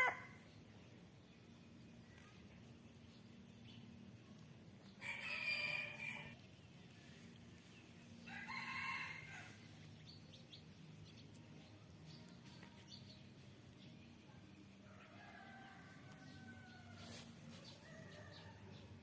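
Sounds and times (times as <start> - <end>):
rooster crowing: 5.0 - 6.4, 8.3 - 9.6.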